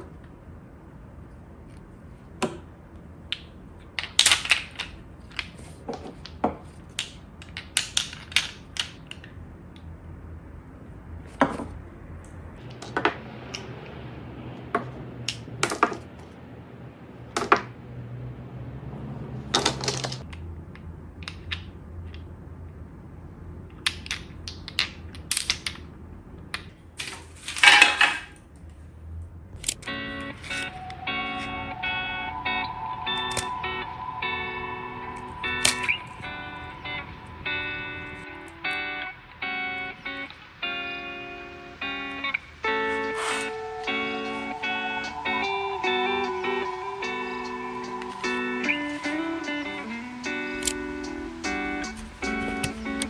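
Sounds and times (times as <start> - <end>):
faint low hum: 9.3 - 23.7.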